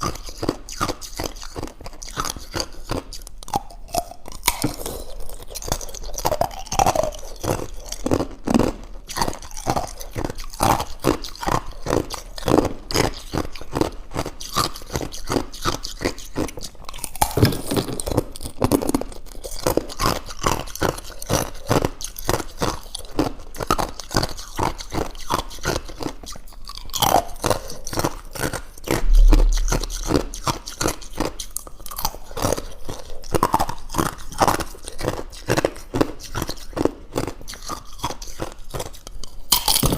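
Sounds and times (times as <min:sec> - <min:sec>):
ice crunching while chewed: 0:00.0 - 0:28.6, 0:32.9 - 0:39.9
low thump: 0:29.0 - 0:30.5.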